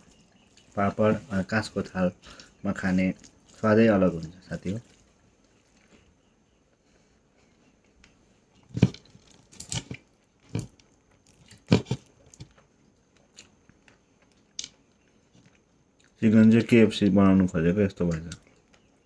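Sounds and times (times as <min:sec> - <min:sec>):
man chewing food: 0:00.0 - 0:01.3, 0:02.1 - 0:16.2, 0:18.0 - 0:19.0
crunchy bites: 0:08.6 - 0:16.7.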